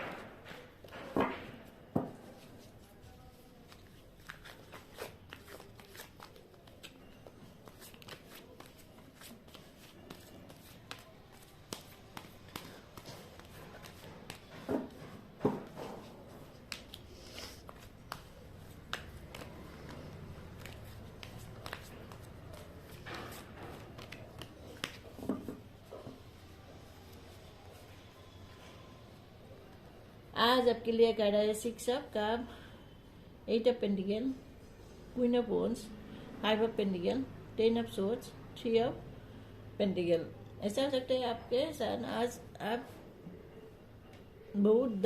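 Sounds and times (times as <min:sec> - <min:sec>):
cards flicking and rustling: 0:03.6 - 0:14.6, 0:16.5 - 0:25.3.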